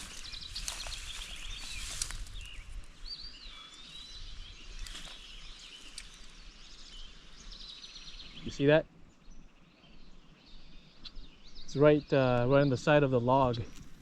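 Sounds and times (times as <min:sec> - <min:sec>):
footsteps through tall grass: 0:00.0 - 0:06.6
bird chirping: 0:00.0 - 0:14.0.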